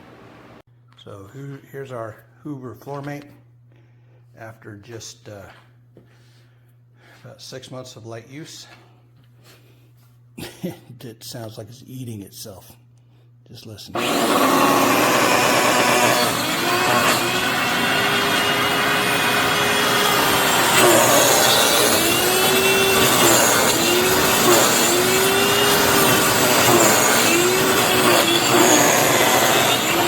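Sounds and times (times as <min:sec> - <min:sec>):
floor cleaner grinding and whining: 0:14.0 - 0:30.0.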